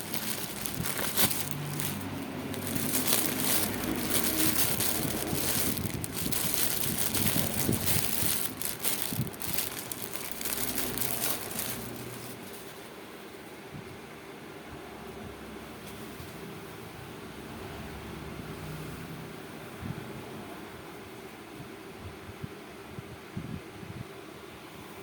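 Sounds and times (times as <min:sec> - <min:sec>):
packaging crinkling and rustling: 0:00.0 - 0:12.9.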